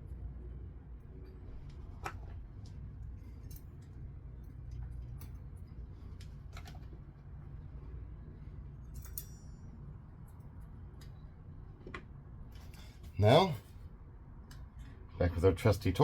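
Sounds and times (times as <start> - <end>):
steady low hum: 0.0 - 16.0
metallic clicks of rotor bolts: 8.8 - 11.2.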